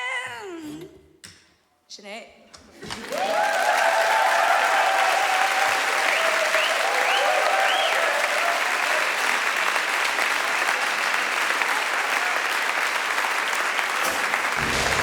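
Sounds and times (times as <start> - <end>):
audience applauding: 2.8 - 15.0
low-pitched sound: 14.6 - 15.0.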